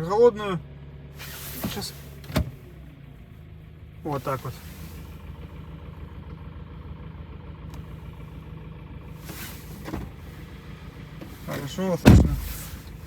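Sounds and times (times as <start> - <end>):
car engine idling with knocking: 0.0 - 13.0.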